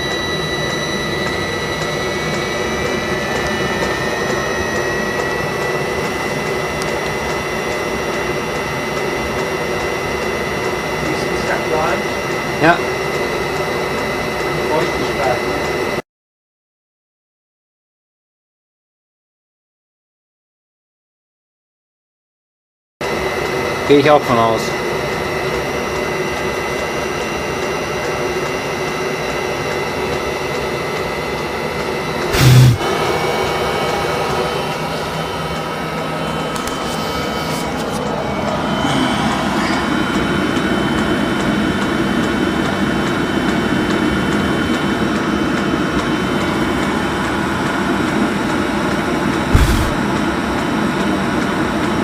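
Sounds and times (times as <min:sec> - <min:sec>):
heater blower whine: 0:00.0 - 0:16.0, 0:23.0 - 0:41.3, 0:45.8 - 0:50.7
thin high whine: 0:32.3 - 0:32.9.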